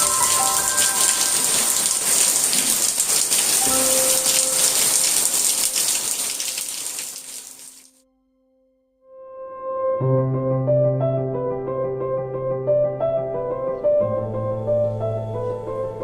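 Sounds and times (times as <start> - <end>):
heavy rain falling: 0.0 - 7.9.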